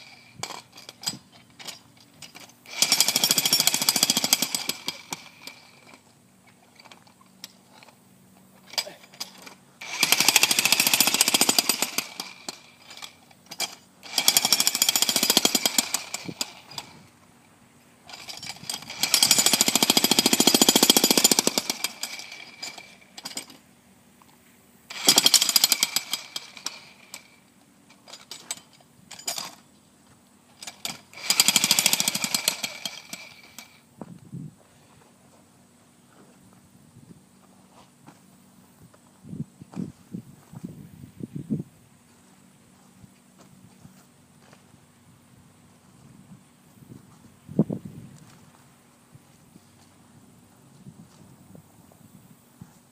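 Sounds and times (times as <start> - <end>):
jackhammer breaking concrete: 2.7 - 6.0, 8.7 - 17.0, 18.1 - 23.6, 24.9 - 27.4, 30.6 - 33.8.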